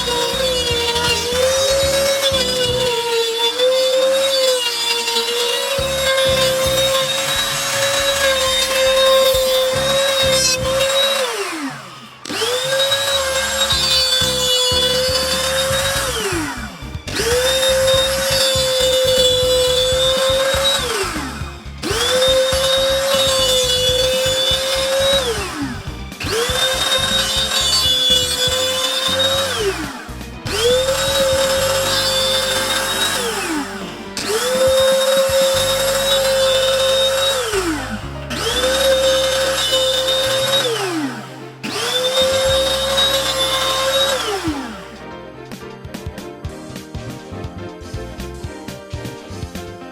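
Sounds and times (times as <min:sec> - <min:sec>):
table saw motor whining: 0:00.0 - 0:45.6.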